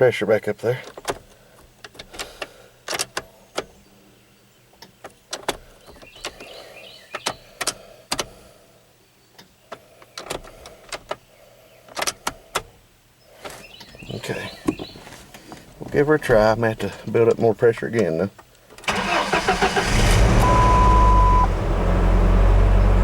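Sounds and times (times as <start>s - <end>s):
electric fuel pump humming: 18.9s - 23.0s.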